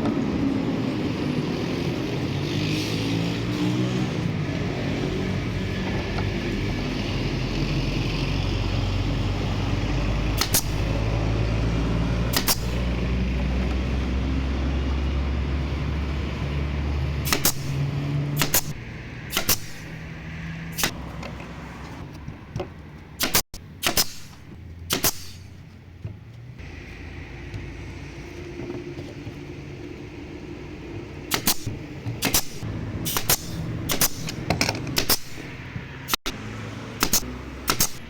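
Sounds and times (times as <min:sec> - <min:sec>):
sharp clicks: 0:10.4 - 0:10.9, 0:12.3 - 0:12.8, 0:17.3 - 0:20.0, 0:23.2 - 0:25.5, 0:31.3 - 0:36.4, 0:37.0 - 0:38.0.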